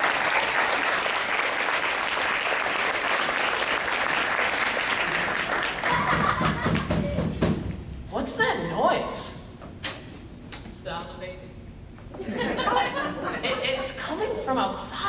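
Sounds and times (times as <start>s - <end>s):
audience applauding: 0.0s - 6.9s.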